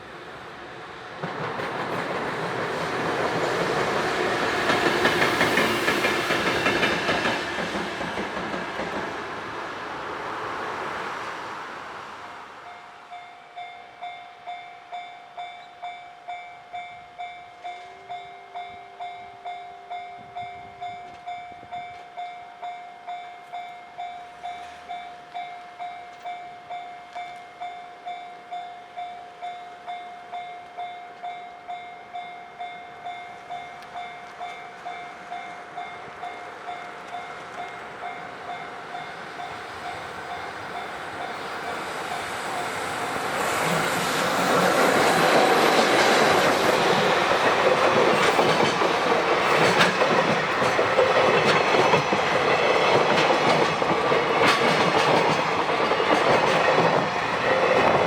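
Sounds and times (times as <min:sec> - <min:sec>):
train wheels rumbling on rails: 0:00.0 - 0:12.3, 0:29.7 - 0:58.0
clickety-clack over rail joints: 0:01.1 - 0:09.6, 0:39.8 - 0:58.0.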